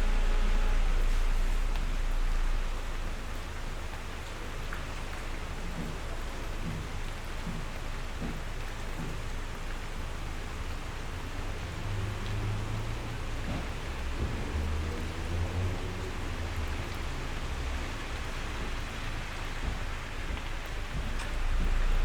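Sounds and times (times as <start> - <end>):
steady rain falling: 0.0 - 22.0.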